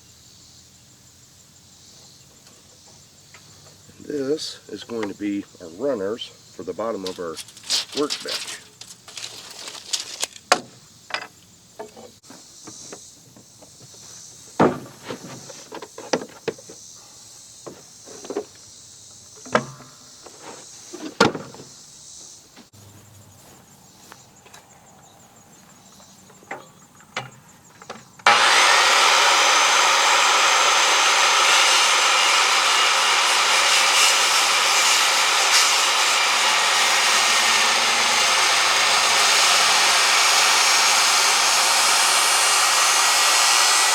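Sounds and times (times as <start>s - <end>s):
faint insect chirr: 0.0s - 28.2s
power saw cutting timber: 3.9s - 10.4s, 28.2s - 43.9s.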